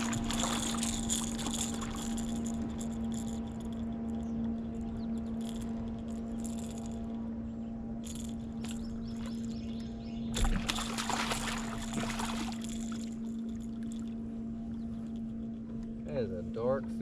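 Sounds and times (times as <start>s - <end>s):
fish splashing water: 0.0s - 2.2s, 10.4s - 13.9s
low electric hum: 0.0s - 17.0s.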